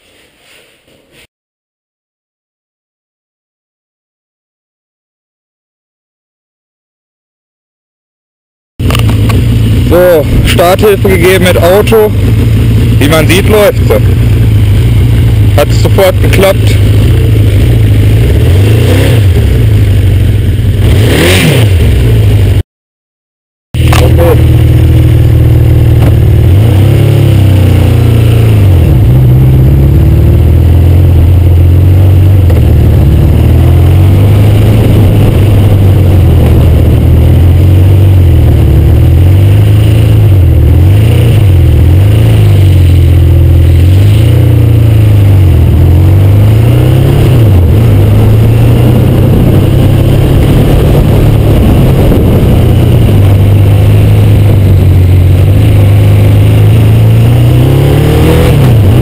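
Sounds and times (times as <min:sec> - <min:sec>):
motorcycle engine revving: 0:08.8 - 0:22.6, 0:23.8 - 0:59.0.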